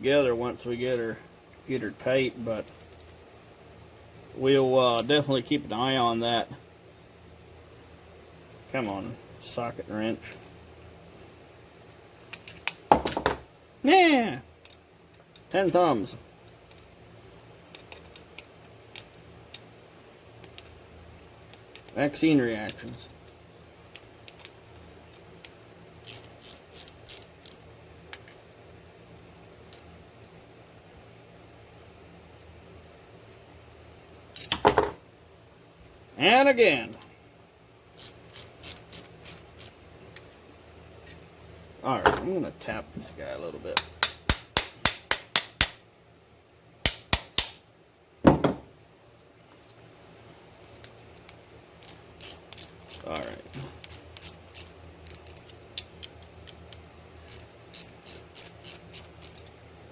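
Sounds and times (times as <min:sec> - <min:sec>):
sharp metallic clicks: 0:43.7 - 0:45.8, 0:46.8 - 0:47.6
dull knock: 0:48.3 - 0:48.7.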